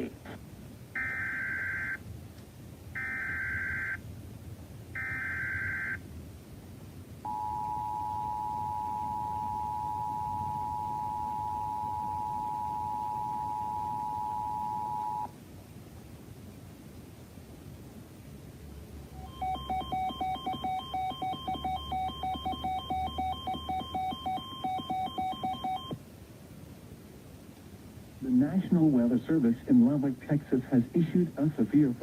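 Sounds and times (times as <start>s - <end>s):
two-tone attention signal: 7.3s - 15.3s, 19.2s - 26.0s
data bursts: 19.2s - 26.0s.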